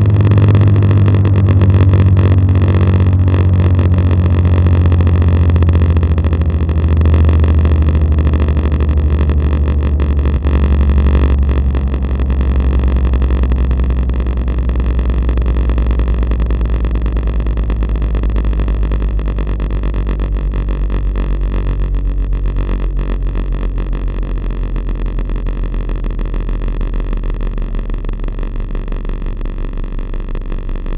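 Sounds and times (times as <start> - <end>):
low siren droning: 0.0 - 20.2.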